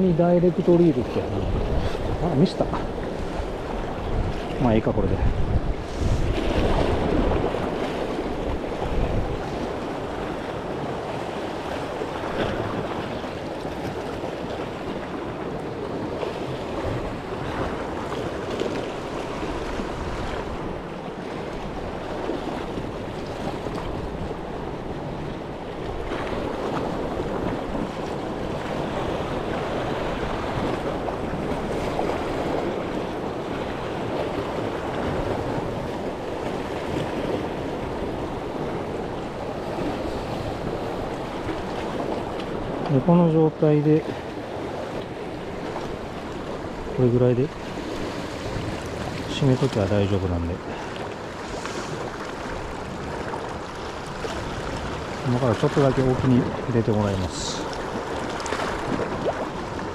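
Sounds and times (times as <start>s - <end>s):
wind buffeting microphone: 0.0s - 43.0s
waves on rocky shore: 0.0s - 59.9s.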